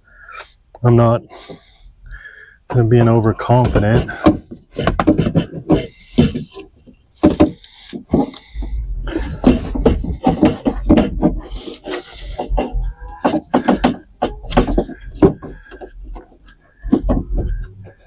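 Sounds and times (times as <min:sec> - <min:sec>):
scraping rustles: 0:02.7 - 0:18.0
tools and gear clattering: 0:02.8 - 0:18.0
low rumble: 0:08.5 - 0:10.2.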